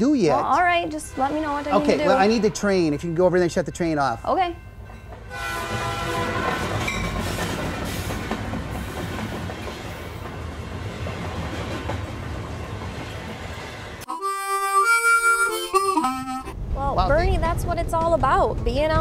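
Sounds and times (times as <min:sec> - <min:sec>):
train rumble and clatter: 0:00.3 - 0:14.0, 0:16.5 - 0:19.0
train whistle: 0:05.3 - 0:07.1.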